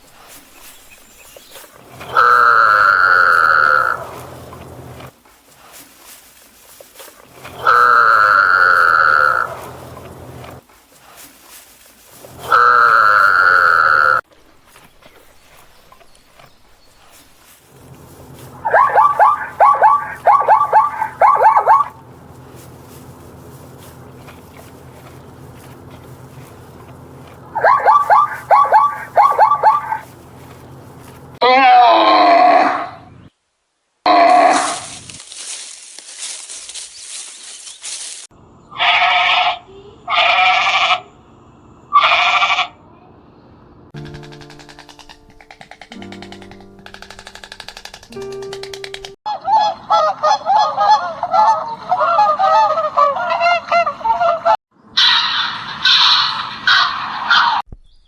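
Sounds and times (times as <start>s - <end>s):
animal yelping calls: 2.0s - 5.1s, 7.4s - 10.6s, 12.3s - 14.2s, 18.3s - 33.1s, 38.7s - 41.2s, 41.9s - 42.8s, 49.3s - 57.6s
steady low hum: 3.6s - 5.1s, 7.2s - 10.6s, 17.7s - 31.4s.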